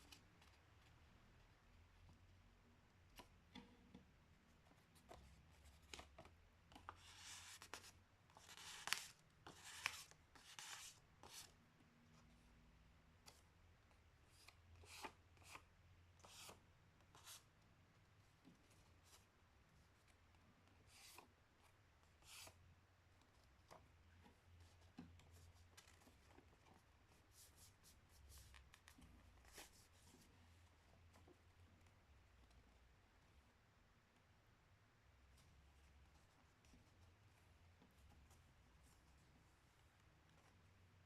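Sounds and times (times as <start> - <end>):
paper being folded and creased: 5.6 - 11.5.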